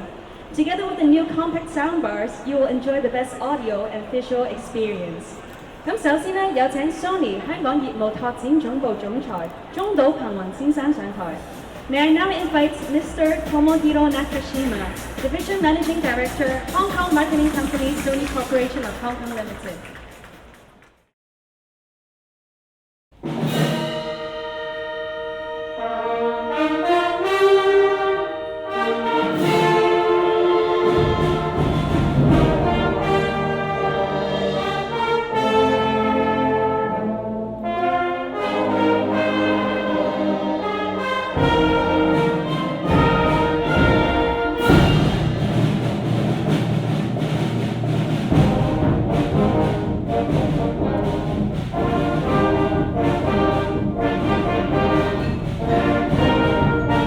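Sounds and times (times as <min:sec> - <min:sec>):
orchestral brass fanfare: 0:11.0 - 0:19.9, 0:23.2 - 0:57.0.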